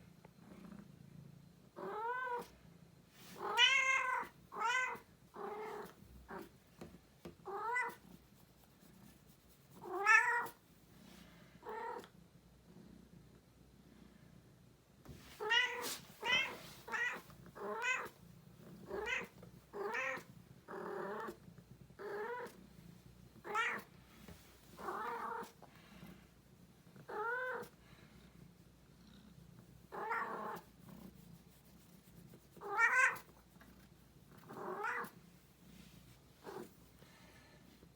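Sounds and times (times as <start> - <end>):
cat meowing: 3.5 - 5.7, 15.4 - 18.1, 19.0 - 20.3, 23.5 - 23.8, 32.7 - 33.2.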